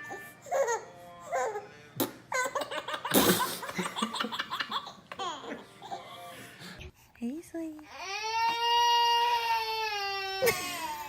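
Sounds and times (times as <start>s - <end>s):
baby laughing: 2.3s - 6.1s.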